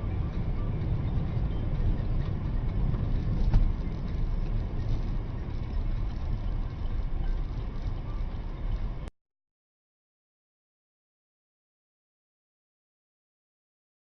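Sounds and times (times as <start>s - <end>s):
car road and engine rumble: 0.0s - 9.1s.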